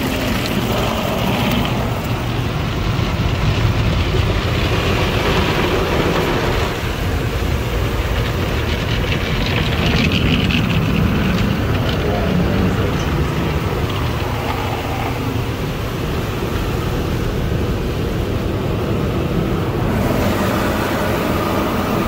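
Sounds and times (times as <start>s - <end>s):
car wash equipment rushing: 0.0s - 22.0s.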